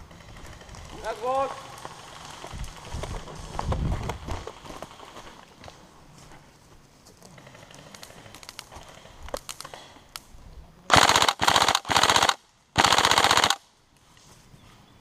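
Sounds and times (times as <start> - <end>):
airsoft gun full-auto bursts: 10.9 - 13.6.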